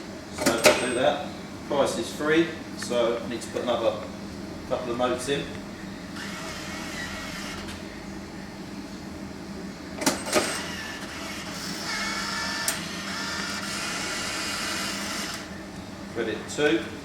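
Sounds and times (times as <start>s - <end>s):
note reader motor whirring: 6.1s - 7.8s, 10.0s - 15.6s.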